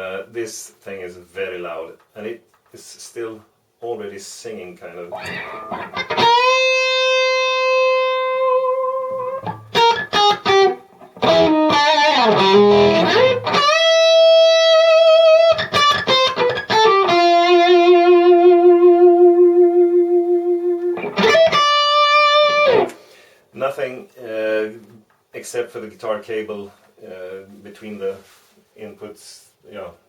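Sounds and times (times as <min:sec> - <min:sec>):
electric guitar lead notes: 0:05.1 - 0:23.0.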